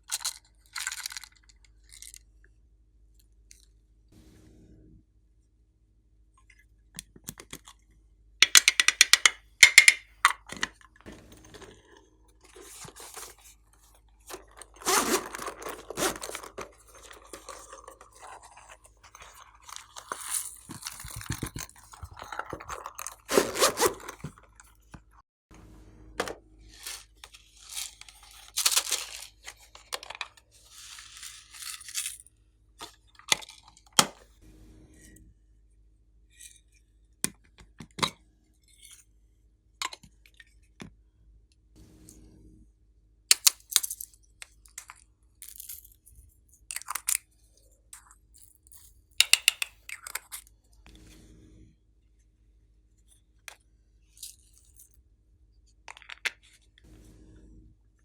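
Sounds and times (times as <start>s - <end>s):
slime scraping and crunching: 14.3s - 24.7s.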